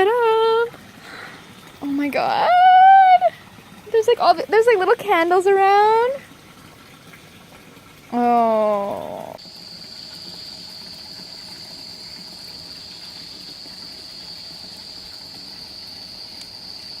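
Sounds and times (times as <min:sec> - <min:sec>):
crickets trilling: 0:09.0 - 0:17.0.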